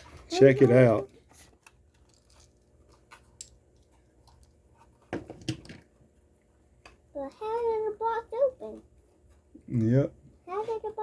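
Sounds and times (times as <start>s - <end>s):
packaging clicks and crinkles: 0.0s - 4.6s.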